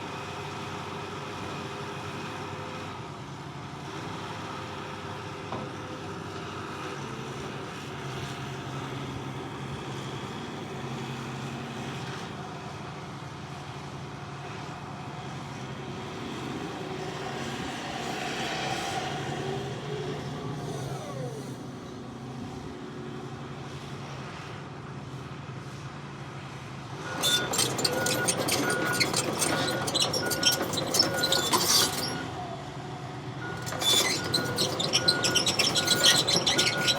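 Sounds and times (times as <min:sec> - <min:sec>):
diesel engine running: 0:06.6 - 0:36.9
hydraulic whining: 0:27.1 - 0:32.5, 0:33.4 - 0:36.9.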